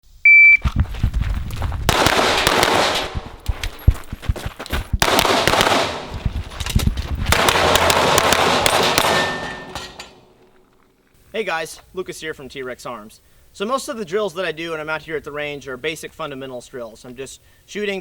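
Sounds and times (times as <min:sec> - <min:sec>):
pistol shots: 0:01.9 - 0:03.3, 0:05.0 - 0:06.2, 0:07.3 - 0:10.2.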